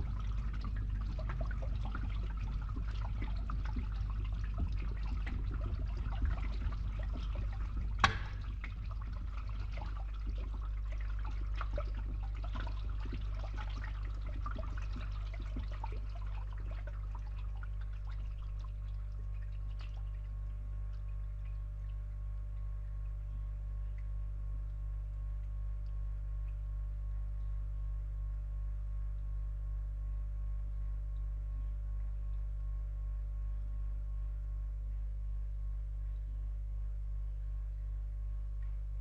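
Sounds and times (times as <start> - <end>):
water pouring and trickling: 0.0 - 23.2
steady low hum: 0.0 - 39.0.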